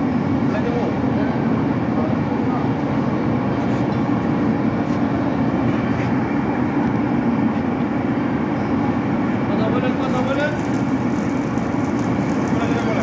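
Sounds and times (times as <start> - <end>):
loud mechanical drone: 4.3 - 13.0.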